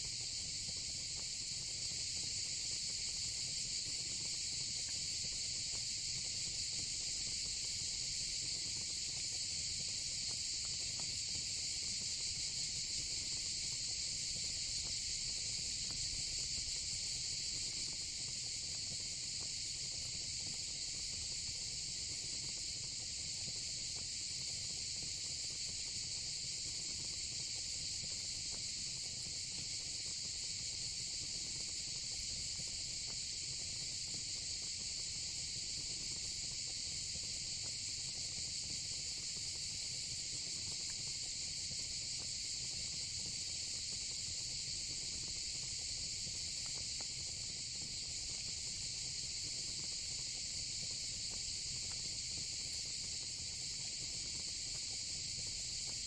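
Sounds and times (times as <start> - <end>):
insect chorus: 23.6 - 56.0.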